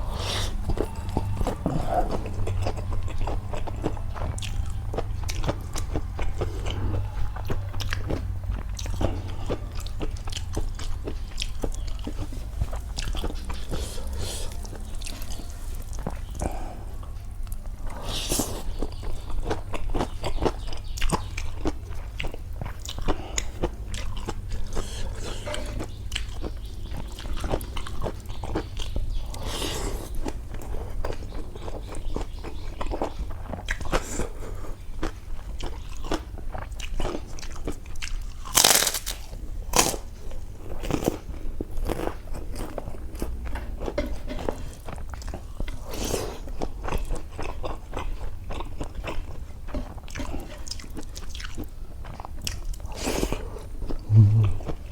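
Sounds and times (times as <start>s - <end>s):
low steady hum: 0.0s - 32.6s, 53.6s - 54.9s
food being chewed crunchily: 0.0s - 54.9s.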